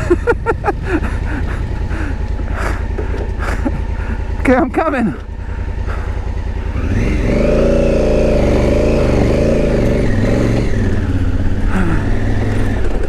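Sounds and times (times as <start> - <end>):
motorcycle engine revving: 0.0 - 13.0.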